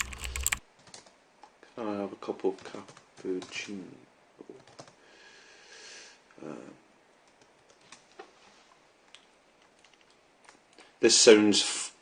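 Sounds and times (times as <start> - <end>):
computer keyboard clicks: 0.0 - 1.1
soft breath: 5.0 - 6.3.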